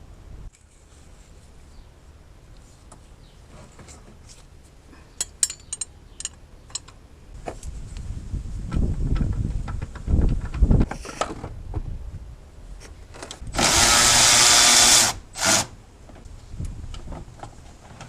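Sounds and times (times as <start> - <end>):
handheld power tool running: 13.6 - 15.7.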